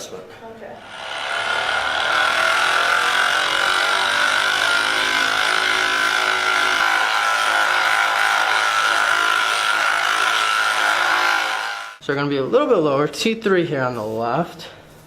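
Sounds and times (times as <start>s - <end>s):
massage device motor whine: 0.8s - 12.0s.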